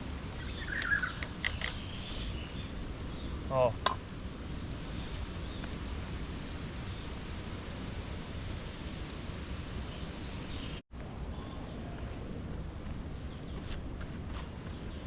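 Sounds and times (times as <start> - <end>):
rushing outdoor background noise: 0.0 - 15.0.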